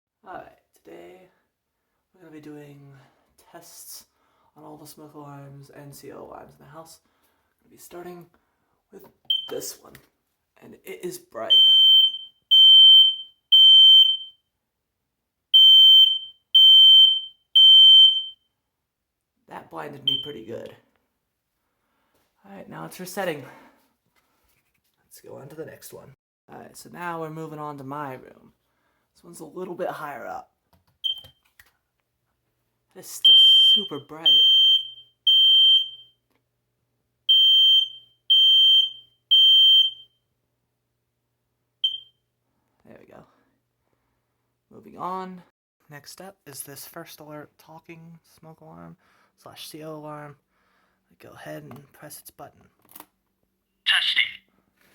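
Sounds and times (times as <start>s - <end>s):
smoke alarm beeping: 9.3s - 9.6s, 11.5s - 14.4s, 15.6s - 18.4s, 20.1s - 20.5s, 31.0s - 31.4s, 33.2s - 36.2s, 37.3s - 40.2s, 41.8s - 42.2s.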